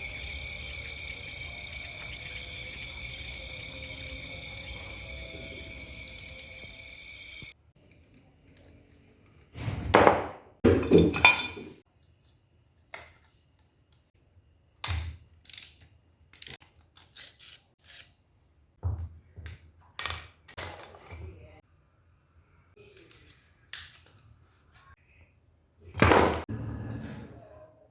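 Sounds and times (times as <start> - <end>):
metal tools clinking and clattering: 10.8 - 11.7.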